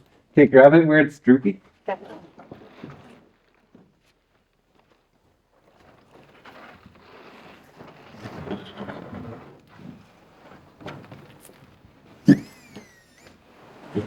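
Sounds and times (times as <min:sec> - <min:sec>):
plastic sheet rustling: 0:01.8 - 0:12.7.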